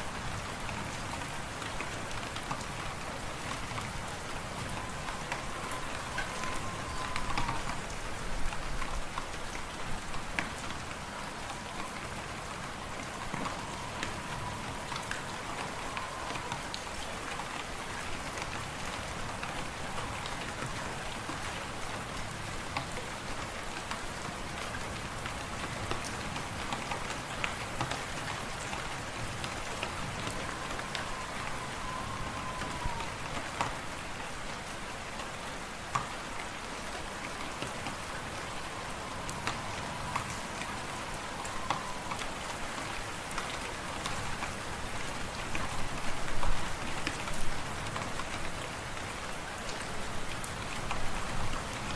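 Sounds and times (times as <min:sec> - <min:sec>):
wind whistling: 0:03.1 - 0:09.2, 0:10.8 - 0:18.0, 0:28.2 - 0:34.1, 0:37.1 - 0:46.0.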